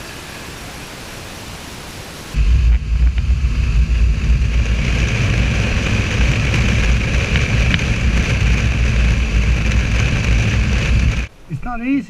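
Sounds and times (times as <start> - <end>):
motorcycle engine running: 2.4 - 11.3.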